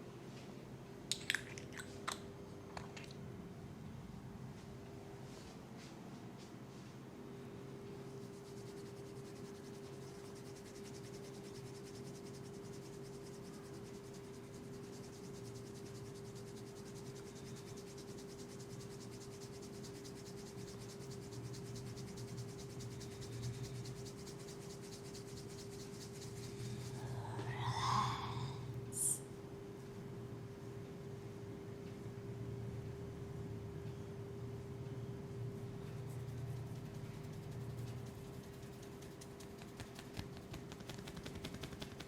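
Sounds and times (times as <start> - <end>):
steady low hum: 0.0 - 42.0
hands rubbing: 22.5 - 27.6, 36.1 - 42.0.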